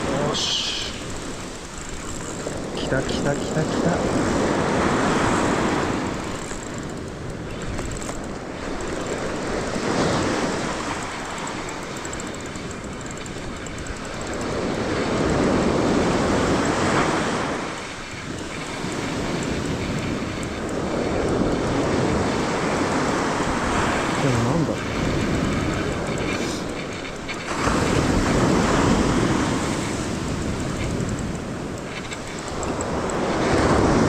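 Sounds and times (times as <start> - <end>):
surf washing onto beach: 0.0 - 6.4
wind on microphone: 0.0 - 34.0.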